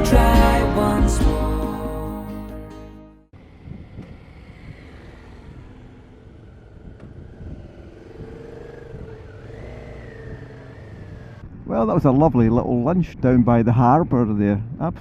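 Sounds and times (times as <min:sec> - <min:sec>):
motorcycle engine running: 0:03.3 - 0:11.7.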